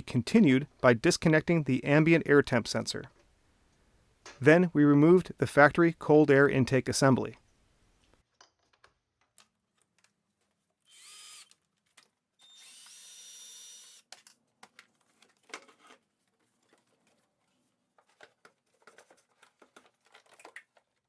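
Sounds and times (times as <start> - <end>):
cordless drill motor whine: 10.9 - 11.6, 12.4 - 14.0.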